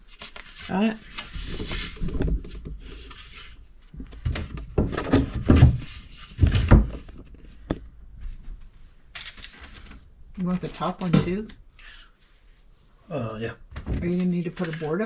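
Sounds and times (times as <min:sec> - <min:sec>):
wooden boards scraping: 0:04.2 - 0:07.2.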